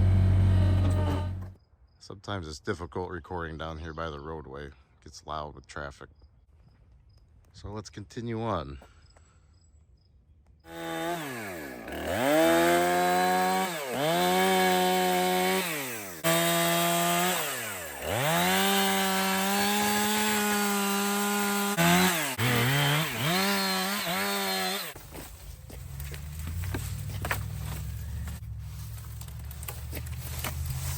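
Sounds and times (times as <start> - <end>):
chainsaw revving: 10.7 - 25.0.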